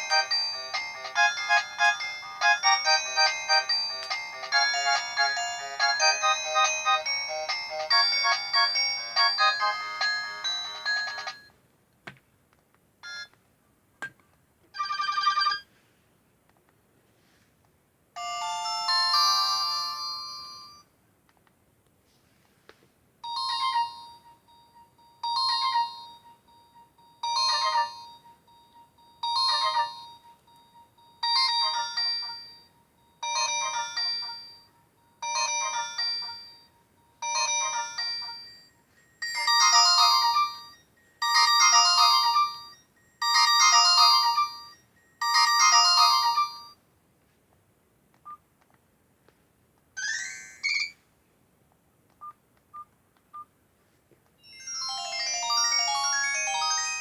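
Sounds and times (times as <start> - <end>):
mobile phone electronic ringtone: 0.0 - 11.5, 13.0 - 13.3, 14.8 - 15.8, 18.2 - 20.8, 23.2 - 46.8, 50.0 - 51.0, 54.4 - 57.0.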